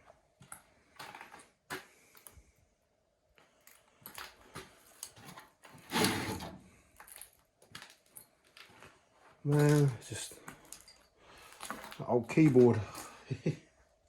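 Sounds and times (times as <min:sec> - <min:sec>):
loud scrape: 0:05.8 - 0:06.7
knocks and scuffs of movement: 0:08.6 - 0:10.7, 0:11.4 - 0:13.2.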